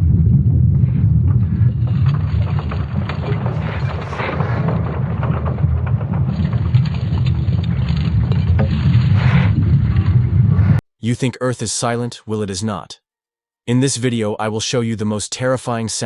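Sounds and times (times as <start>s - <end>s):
deep rumbling drone: 0.0s - 10.8s.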